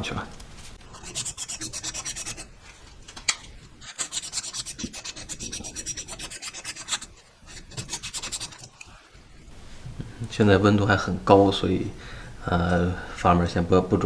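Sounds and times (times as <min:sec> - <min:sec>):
sanding copper pipe by hand: 0:00.8 - 0:02.5, 0:03.9 - 0:08.8.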